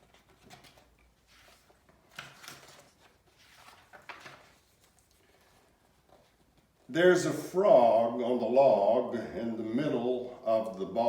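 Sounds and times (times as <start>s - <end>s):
book pages turning: 0.0s - 6.8s.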